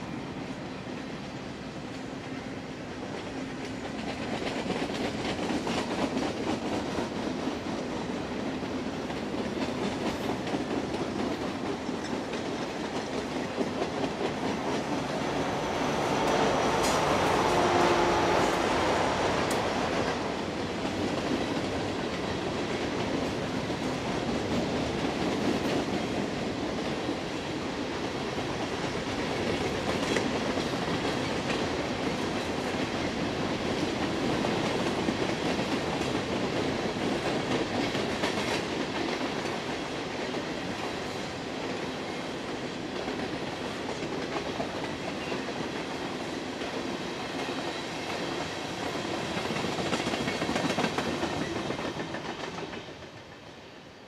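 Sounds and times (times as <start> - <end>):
train cars rolling past: 0.0 - 54.0
wheels clicking over rail joints: 42.6 - 53.4.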